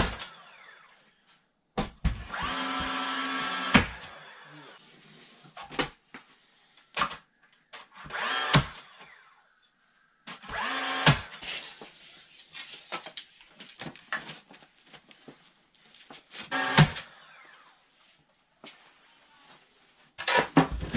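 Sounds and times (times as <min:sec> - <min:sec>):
power drill running: 0:00.0 - 0:01.0, 0:02.3 - 0:04.8, 0:08.0 - 0:09.5, 0:10.3 - 0:11.4, 0:16.5 - 0:17.8.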